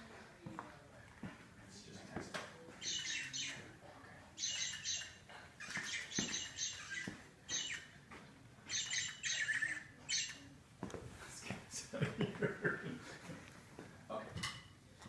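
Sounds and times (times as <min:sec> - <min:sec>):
toy bird chirping: 0:02.8 - 0:03.7, 0:04.4 - 0:08.0, 0:08.7 - 0:10.5.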